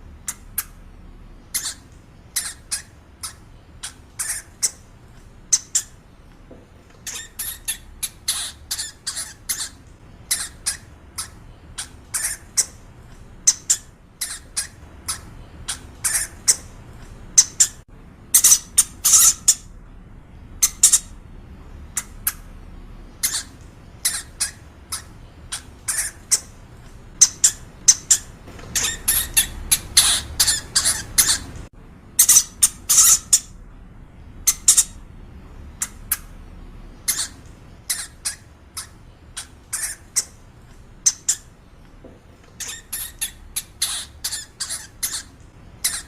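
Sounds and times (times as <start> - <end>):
hamster squeaking: 1.5 - 4.9, 5.5 - 6.0, 6.9 - 19.7, 20.6 - 21.2, 23.2 - 33.6, 34.4 - 35.0, 37.0 - 40.4, 41.0 - 41.5, 42.5 - 46.0.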